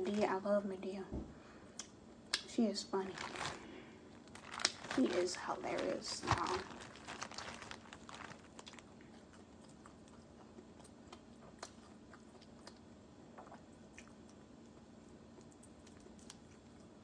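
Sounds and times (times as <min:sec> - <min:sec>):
soft wet mouth clicks: 0:01.8 - 0:02.5
faint chewing: 0:03.1 - 0:17.0.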